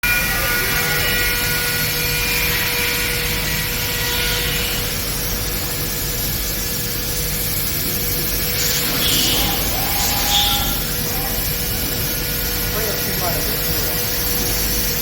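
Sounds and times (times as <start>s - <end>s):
machine mechanical whine: 0.0s - 15.0s.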